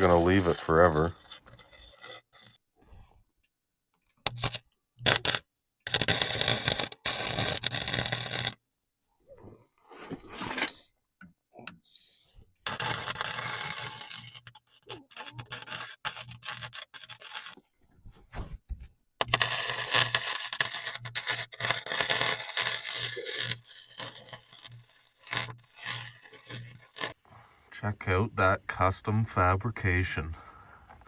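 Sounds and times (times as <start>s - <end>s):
welder arc crackling: 0.0s - 1.2s, 12.7s - 17.6s, 19.2s - 27.2s
faint scraping: 0.0s - 2.6s, 9.3s - 10.8s, 12.7s - 17.6s, 19.2s - 31.0s.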